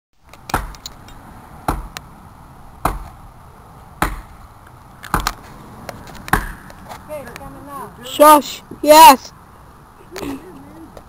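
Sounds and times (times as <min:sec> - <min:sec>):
axe chopping into tree: 0:00.4 - 0:00.9, 0:01.7 - 0:02.0, 0:02.8 - 0:03.2, 0:04.0 - 0:04.4, 0:05.1 - 0:05.4, 0:06.2 - 0:06.7.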